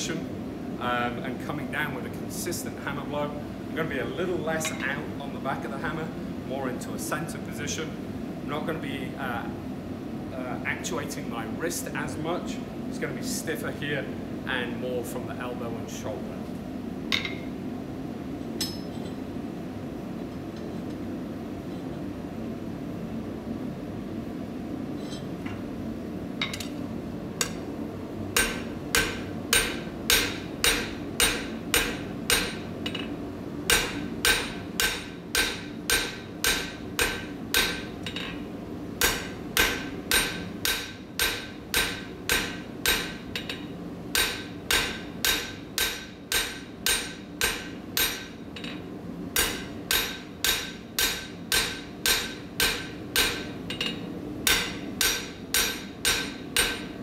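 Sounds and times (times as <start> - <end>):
hammer striking hot steel: 18.6 - 18.9, 28.4 - 33.1, 33.7 - 38.4, 39.0 - 48.8, 49.4 - 57.0.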